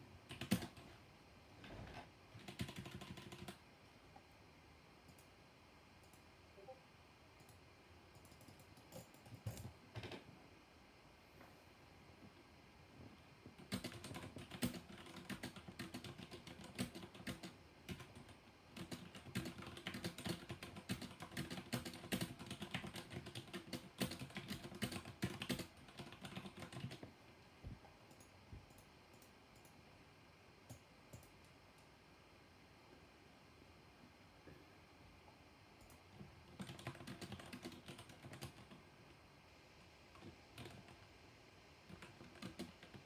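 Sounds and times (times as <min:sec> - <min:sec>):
mechanical keyboard typing: 0:00.3 - 0:00.9, 0:02.4 - 0:03.6, 0:08.2 - 0:10.2, 0:13.6 - 0:27.1, 0:35.8 - 0:38.8, 0:40.1 - 0:41.0, 0:41.9 - 0:43.0.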